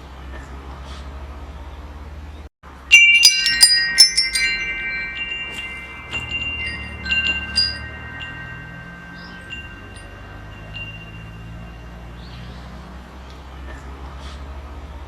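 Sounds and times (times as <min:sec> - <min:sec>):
metal wind chimes ringing: 0:02.8 - 0:12.8
low steady rumble: 0:02.9 - 0:12.1.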